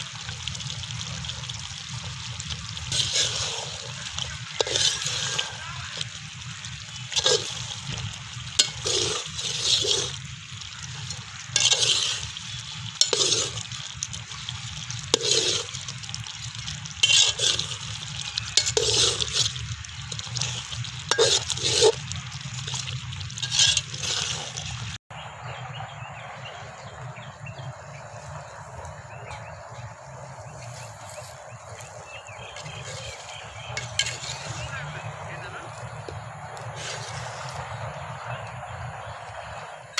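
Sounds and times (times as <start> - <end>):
spoon stirring in a pot: 2.7 - 24.9, 30.6 - 34.7, 35.7 - 37.7.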